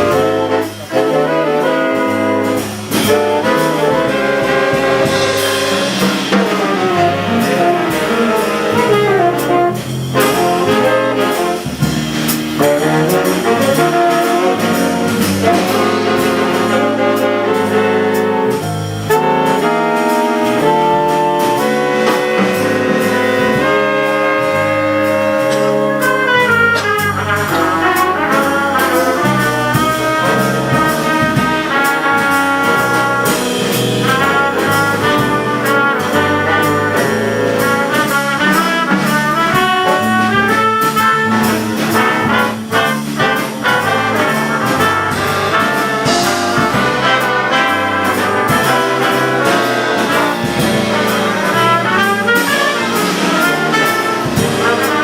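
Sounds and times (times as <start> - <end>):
big band jazz ballad: 0.0 - 55.0.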